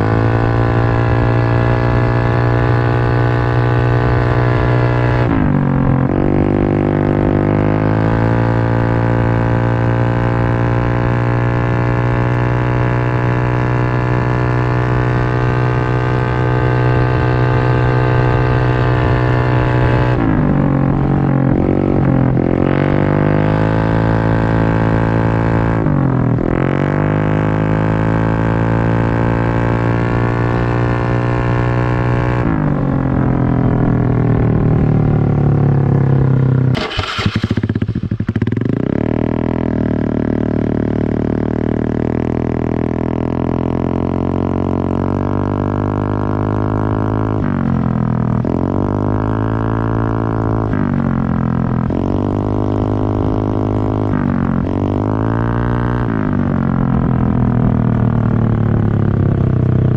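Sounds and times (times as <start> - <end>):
motorcycle engine revving high: 0.0 - 59.9
exhaust crackle: 35.2 - 39.8.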